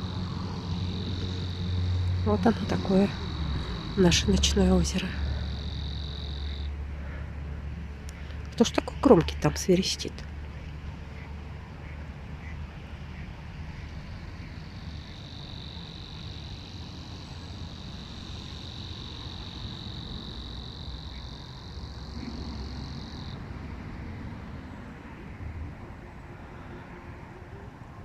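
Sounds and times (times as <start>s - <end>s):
cricket trilling: 0.0s - 7.2s, 14.0s - 25.3s
road traffic rumble: 0.0s - 28.0s.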